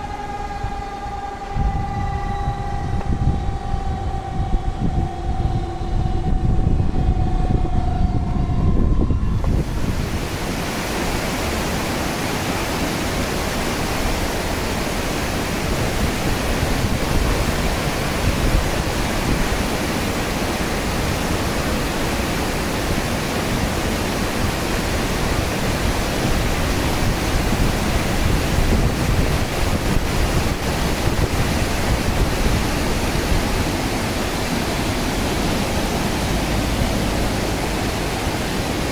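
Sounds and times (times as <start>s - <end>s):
warning siren steady tone: 0.0s - 11.6s, 13.4s - 38.9s
rush of released water: 9.4s - 38.9s.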